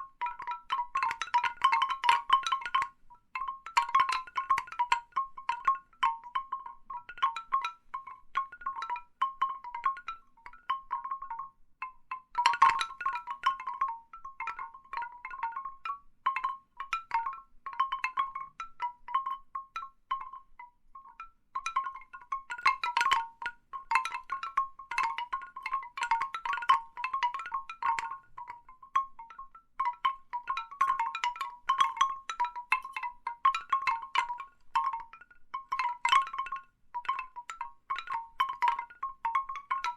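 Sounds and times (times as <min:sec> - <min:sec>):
bamboo wind chimes knocking: 0:00.0 - 0:39.9.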